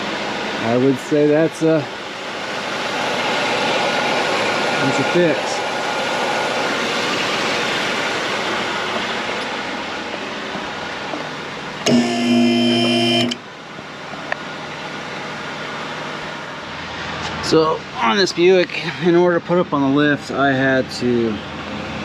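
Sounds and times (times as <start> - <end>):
steady running noise: 0.0 - 22.0
car horn: 11.8 - 13.4.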